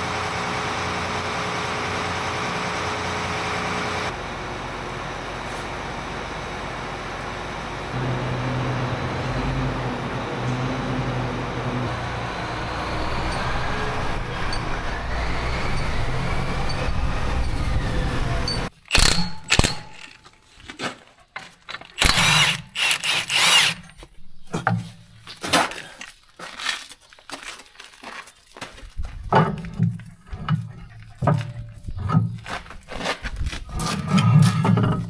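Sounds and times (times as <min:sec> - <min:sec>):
machine engine running: 0:00.0 - 0:20.2, 0:22.0 - 0:23.9
metal clanks and squeals: 0:08.1 - 0:20.4, 0:33.7 - 0:35.0.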